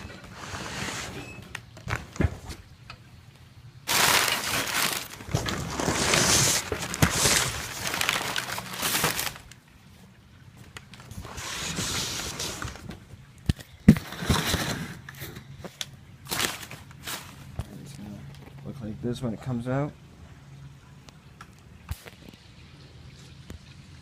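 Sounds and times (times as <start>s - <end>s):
packaging rustling and crinkling: 3.9s - 9.6s, 10.9s - 13.0s, 13.9s - 18.6s.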